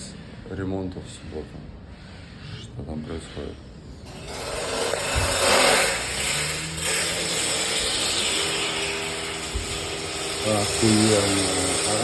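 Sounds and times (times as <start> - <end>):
power tool running: 4.0 - 12.0.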